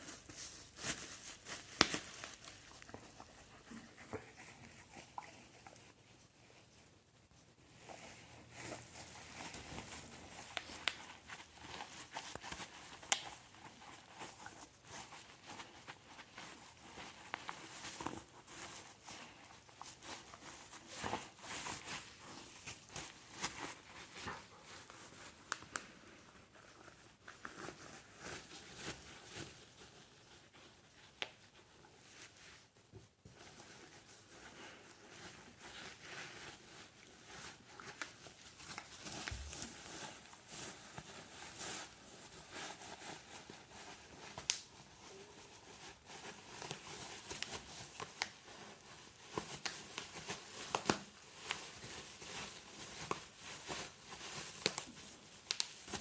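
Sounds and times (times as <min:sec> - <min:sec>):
bubble wrap popping: 0:00.0 - 0:03.8, 0:08.9 - 0:25.9, 0:35.2 - 0:56.0
bubble wrap crinkling: 0:00.0 - 0:56.0.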